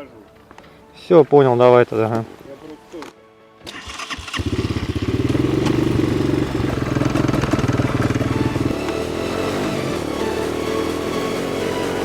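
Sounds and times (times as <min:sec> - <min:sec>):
atv engine running: 0:03.8 - 0:12.0.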